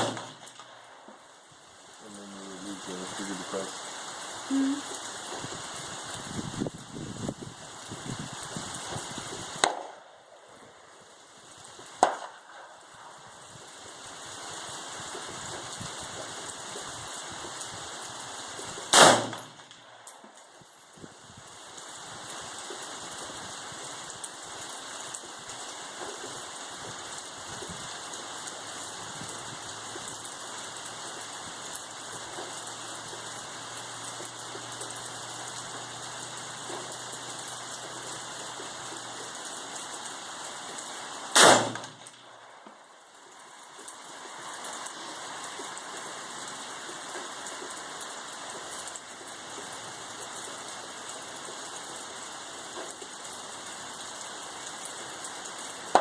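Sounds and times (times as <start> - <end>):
rifle shot: 0.0 - 0.7, 9.6 - 10.0, 12.0 - 12.4, 18.9 - 19.9, 41.4 - 42.0
steady rain falling: 0.0 - 56.0.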